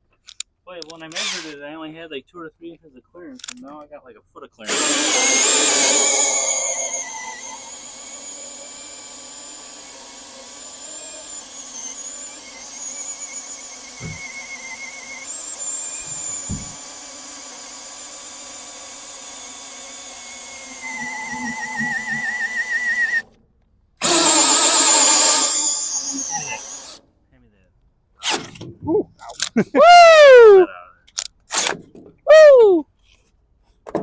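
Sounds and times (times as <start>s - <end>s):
electric drill whining: 1.2s - 1.6s, 4.7s - 23.2s, 24.0s - 27.0s
dull knocks: 16.4s - 16.8s.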